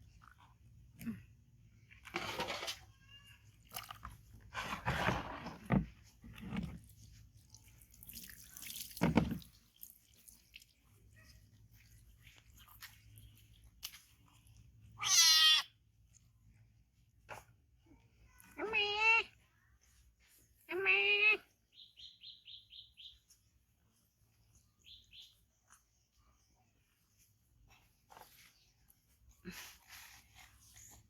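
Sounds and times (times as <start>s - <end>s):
rustling and scuffling: 1.9s - 7.4s, 23.2s - 31.0s
kitten meowing: 15.0s - 15.6s.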